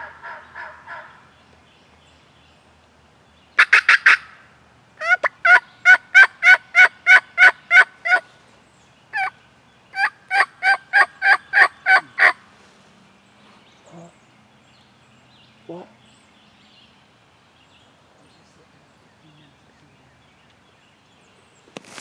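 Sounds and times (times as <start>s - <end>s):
turkey yelping: 5.0s - 8.2s, 10.0s - 12.4s.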